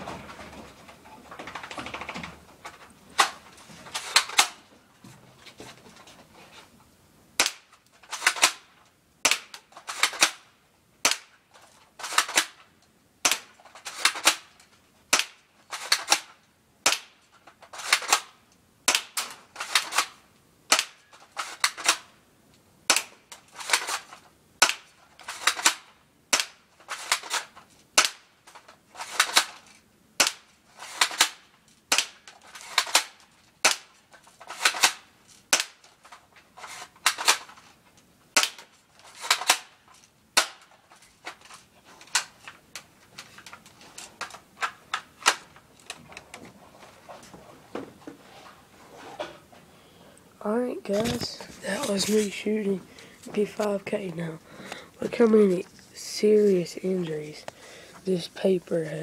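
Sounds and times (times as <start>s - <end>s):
airsoft gun firing: 7.4s - 11.3s, 15.1s - 17.2s, 17.8s - 20.1s, 20.7s - 21.0s, 24.6s - 28.3s, 30.2s - 33.9s.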